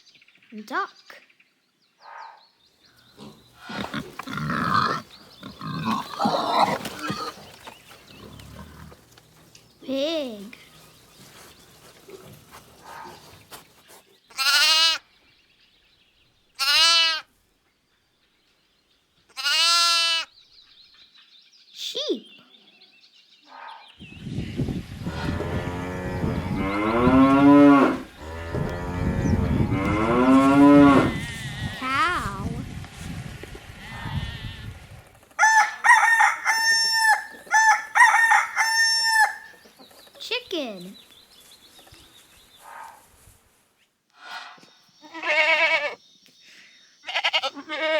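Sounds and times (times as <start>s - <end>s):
sheep bleating: 14.3s - 15.0s, 16.6s - 17.3s, 19.3s - 20.3s, 25.0s - 32.5s, 33.8s - 34.9s, 45.0s - 46.0s, 47.0s - 47.9s
rooster crowing: 35.4s - 39.6s.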